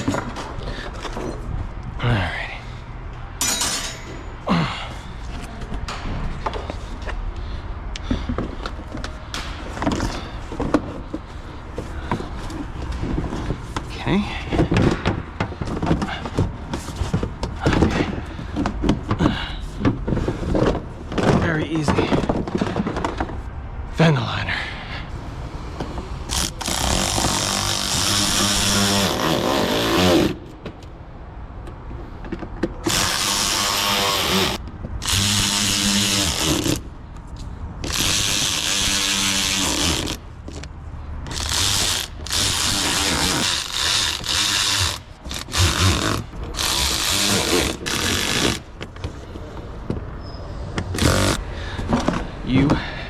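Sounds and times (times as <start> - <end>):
cordless drill bursts: 32.9 - 36.8, 51.0 - 51.4.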